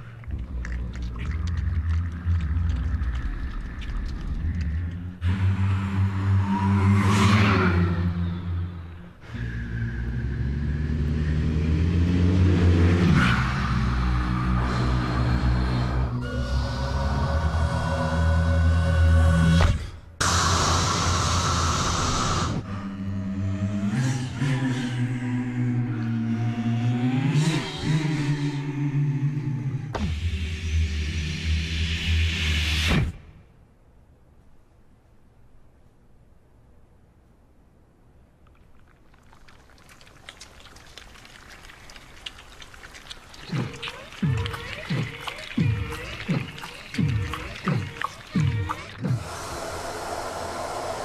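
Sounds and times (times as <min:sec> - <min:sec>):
choir imitating car engine: 0:09.3 - 0:19.4, 0:43.4 - 0:51.0
breathy hiss: 0:19.9 - 0:22.6, 0:45.0 - 0:51.0.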